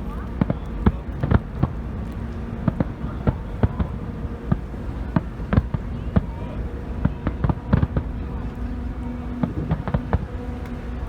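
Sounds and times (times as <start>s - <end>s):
fireworks bangs: 0.0s - 11.0s
low rumble: 0.0s - 11.0s.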